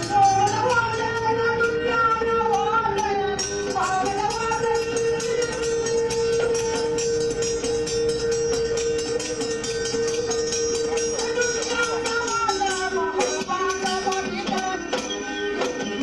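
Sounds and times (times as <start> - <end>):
person singing wavering melody: 0.0 - 16.0
rapid percussion strokes: 0.0 - 16.0
steady drone note: 2.5 - 12.9.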